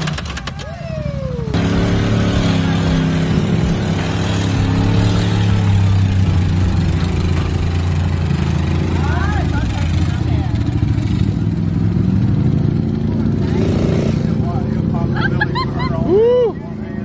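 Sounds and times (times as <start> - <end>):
atv engine running: 0.0 - 16.1.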